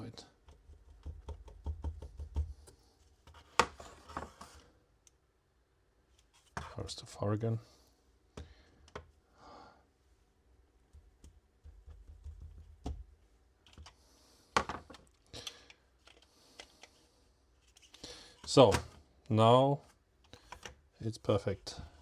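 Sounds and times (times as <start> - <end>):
keyboard clicking and knocking in case: 0.4 - 4.3.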